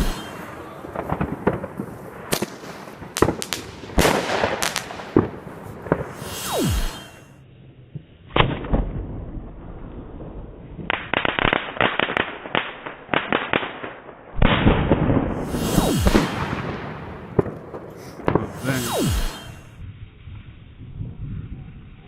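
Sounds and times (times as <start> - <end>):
falling whistle: 0.0 - 0.8, 6.2 - 7.3, 15.4 - 16.8, 18.6 - 19.7
firework bang: 0.0 - 7.3, 14.4 - 19.8
fireworks crackling: 0.0 - 7.3, 14.7 - 19.8.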